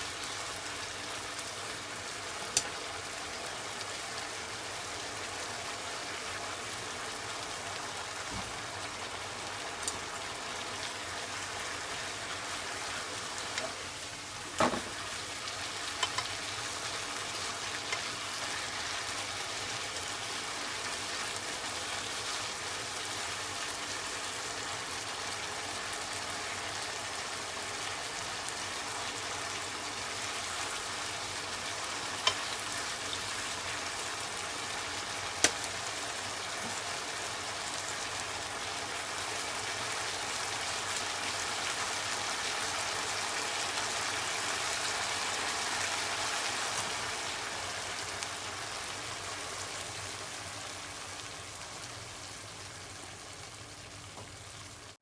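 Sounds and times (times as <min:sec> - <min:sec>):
food sizzling in a pan: 0:00.0 - 0:55.0
utensil clicking against pan: 0:16.0 - 0:16.3.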